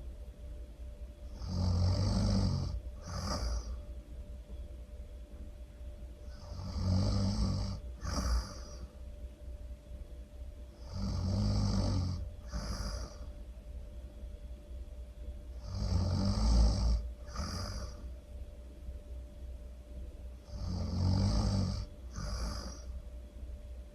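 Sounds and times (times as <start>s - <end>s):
person snoring loudly: 1.3s - 3.8s, 6.3s - 8.9s, 10.8s - 13.3s, 15.6s - 18.1s, 20.4s - 22.9s.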